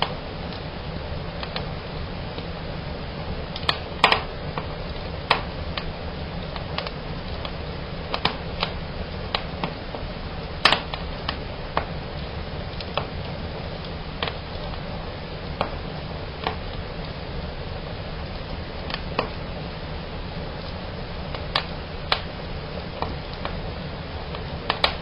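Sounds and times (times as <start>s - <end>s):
fire crackling and snapping: 0.0s - 25.0s.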